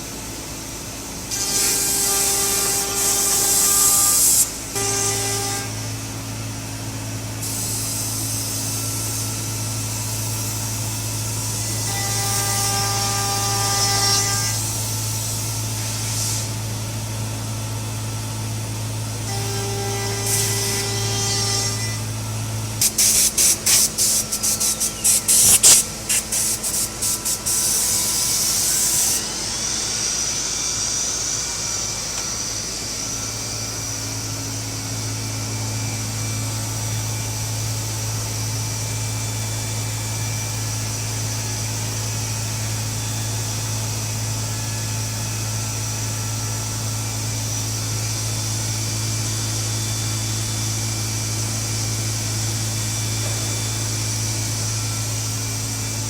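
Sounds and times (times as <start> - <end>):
machine hum with high whine: 0.0 - 56.0
router short hissing bursts: 1.3 - 5.7, 11.4 - 16.6, 19.3 - 22.0, 22.8 - 33.0.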